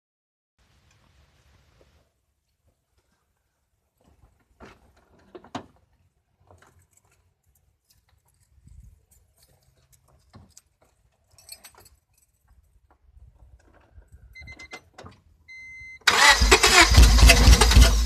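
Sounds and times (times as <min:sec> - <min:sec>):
faint handling knocks and clicks: 0:01.8 - 0:15.3.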